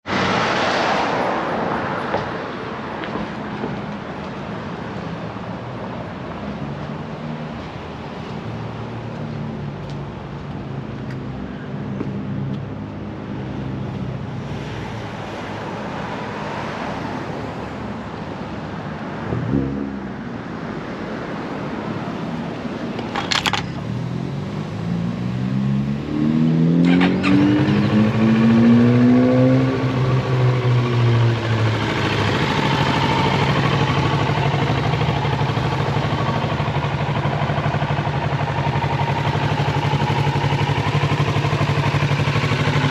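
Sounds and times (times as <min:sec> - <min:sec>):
motorcycle engine revving and idling: 0:23.0 - 0:42.9.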